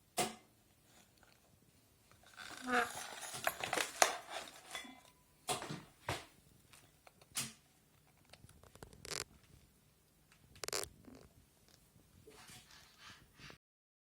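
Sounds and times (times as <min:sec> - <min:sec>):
scrapes and rustles of hand work: 0:02.2 - 0:05.2, 0:11.6 - 0:13.6.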